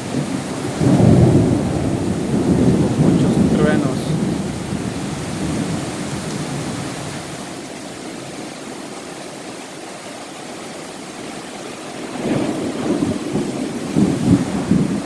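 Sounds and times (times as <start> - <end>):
low thunder rumble: 0.0 - 7.3, 12.1 - 15.0
steady rain: 0.0 - 15.0.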